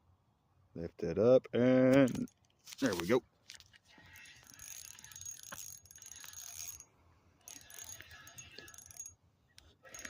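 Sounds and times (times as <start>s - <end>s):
fishing reel cranking: 4.0s - 10.0s.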